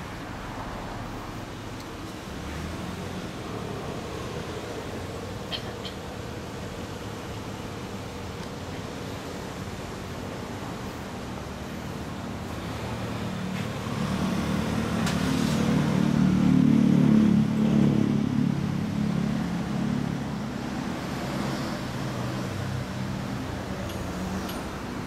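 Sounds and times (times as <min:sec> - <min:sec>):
vehicle engine passing by: 0:12.6 - 0:24.5.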